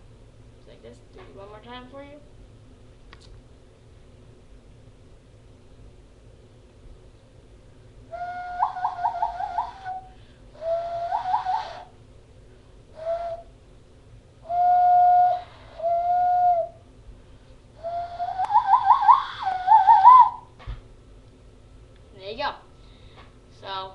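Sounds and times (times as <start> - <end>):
hand-cupped owl call whistles: 8.1 - 12.0, 12.9 - 13.6, 14.4 - 16.9, 17.8 - 20.5.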